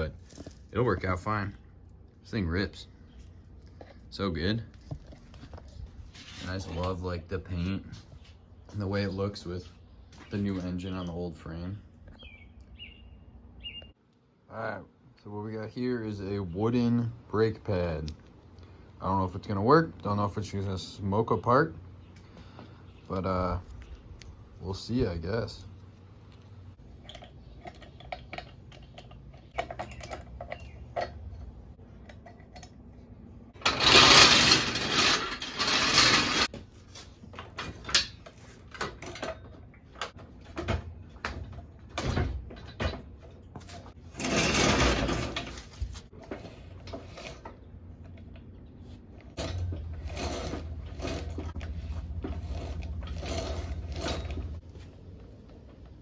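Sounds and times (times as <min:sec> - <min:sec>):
tools clicking and knocking: 0:26.9 - 0:32.9.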